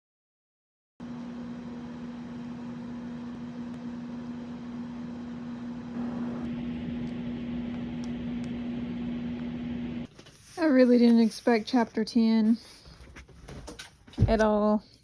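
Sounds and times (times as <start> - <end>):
machine hum: 1.0 - 10.2.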